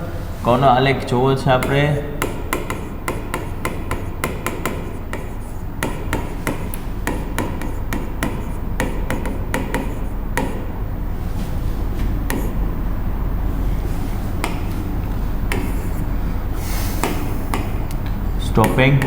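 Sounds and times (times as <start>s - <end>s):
steady low hum: 0.0s - 19.0s
writing taps and clicks on board: 1.6s - 10.6s, 12.3s - 12.6s, 14.4s - 14.8s, 15.5s - 16.0s, 17.0s - 19.0s.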